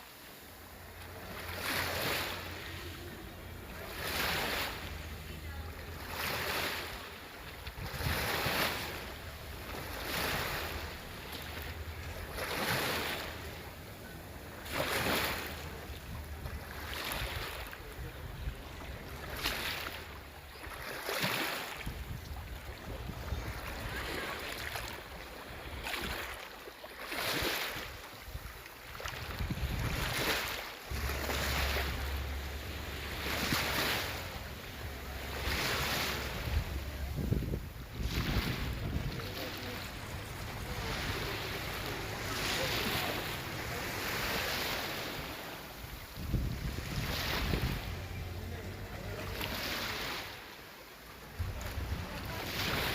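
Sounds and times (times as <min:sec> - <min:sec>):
small sea waves washing: 0:00.0 - 0:52.9
wind rumble on microphone: 0:07.6 - 0:09.5, 0:21.8 - 0:24.1, 0:28.2 - 0:41.4, 0:45.8 - 0:48.6, 0:51.3 - 0:52.8.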